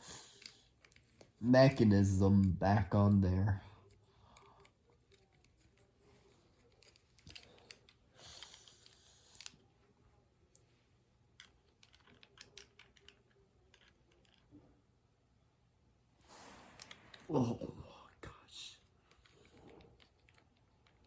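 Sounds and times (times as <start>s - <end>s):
plastic toy parts clicking: 0.4s - 1.3s, 4.0s - 5.9s, 6.5s - 9.6s, 11.4s - 14.5s, 19.1s - 21.0s.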